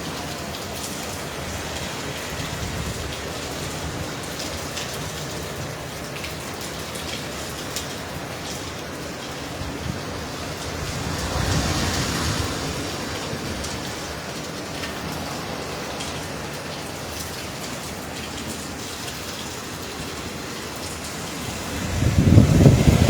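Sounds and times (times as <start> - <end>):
heavy rain pouring: 0.0 - 23.0.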